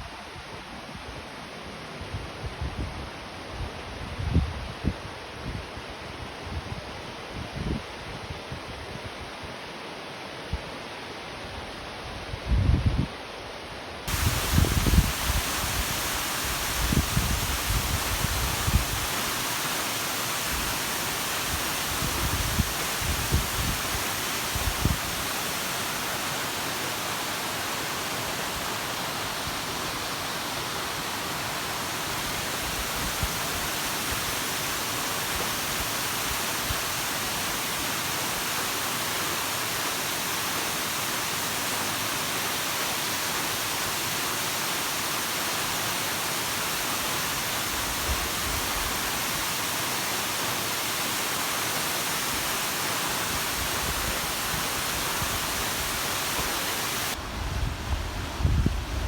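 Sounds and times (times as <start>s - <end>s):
waterfall roaring: 14.1s - 57.2s.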